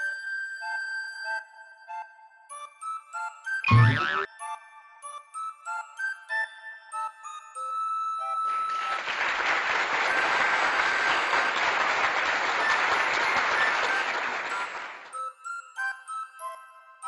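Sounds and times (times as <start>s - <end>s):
faint chiming music: 4.4s - 8.7s, 15.1s - 17.0s
applause: 8.4s - 15.2s.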